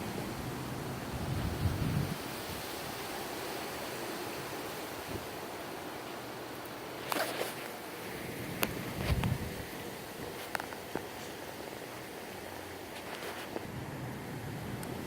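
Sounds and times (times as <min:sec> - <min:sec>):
wind buffeting on microphone: 0:00.0 - 0:03.0, 0:08.2 - 0:10.4
gusty wind rushing: 0:00.0 - 0:03.1
brief rustle: 0:07.0 - 0:07.8, 0:12.9 - 0:13.7.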